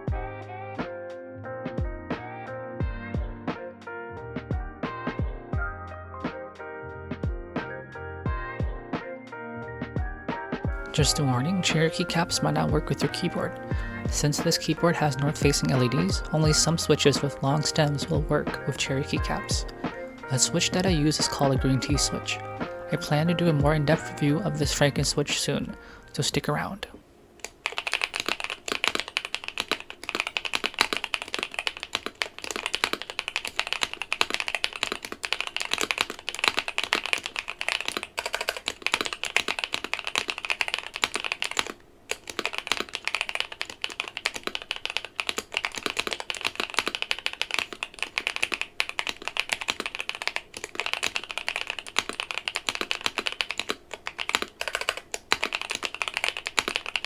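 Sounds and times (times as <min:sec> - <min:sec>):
mechanical keyboard typing: 0:10.8 - 0:26.3, 0:27.4 - 0:57.0.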